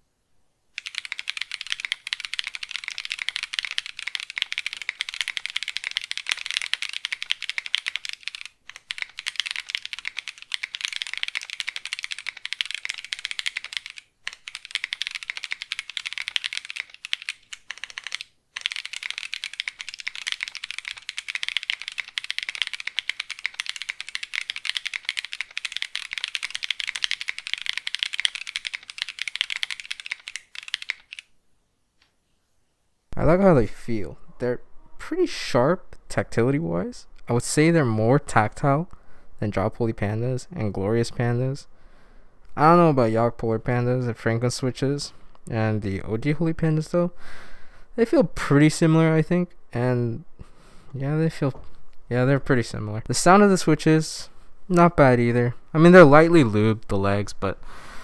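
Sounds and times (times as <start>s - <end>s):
fast typing on mechanical keyboard: 0.8s - 31.3s.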